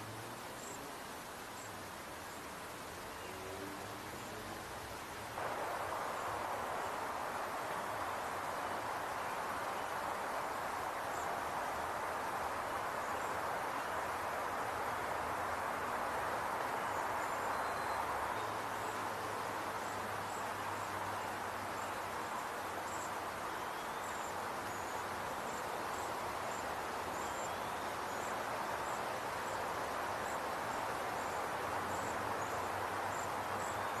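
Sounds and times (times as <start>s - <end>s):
steady rushing noise: 4.9s - 20.9s.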